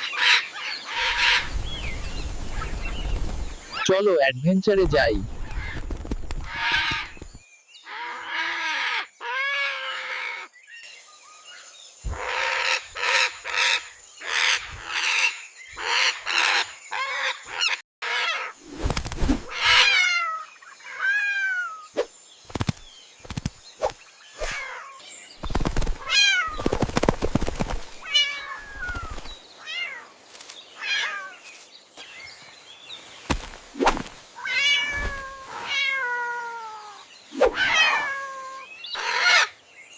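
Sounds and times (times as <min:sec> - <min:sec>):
birds calling: 0:00.0 - 0:39.9
wings flapping: 0:01.0 - 0:03.8, 0:05.2 - 0:07.4, 0:18.6 - 0:19.9, 0:22.4 - 0:24.7, 0:25.4 - 0:29.4, 0:33.2 - 0:35.8
cats meowing: 0:34.4 - 0:39.5.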